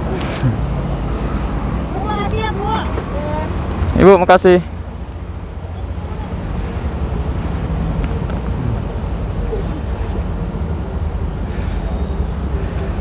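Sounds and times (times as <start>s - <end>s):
road traffic: 0.0s - 13.0s.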